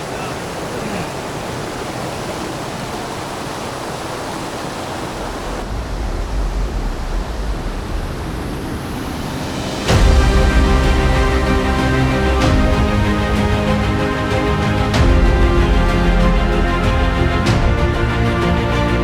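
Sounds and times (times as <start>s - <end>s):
waterfall rushing: 0.0s - 19.0s
low rumble: 5.3s - 19.0s
music: 8.7s - 19.0s.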